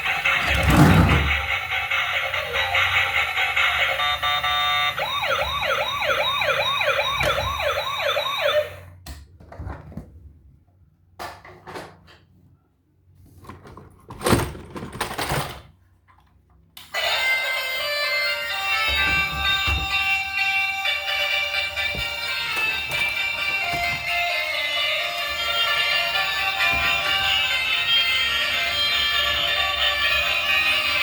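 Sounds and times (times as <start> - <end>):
electronic siren yelping: 0.0 - 8.9.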